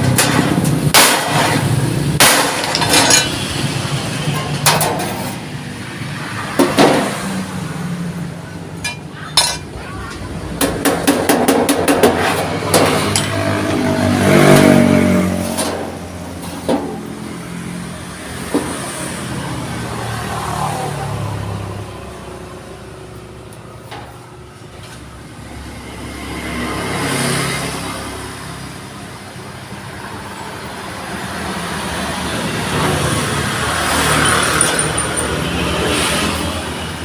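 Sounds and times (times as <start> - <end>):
metallic knocks on steel sheet: 10.6 - 13.8.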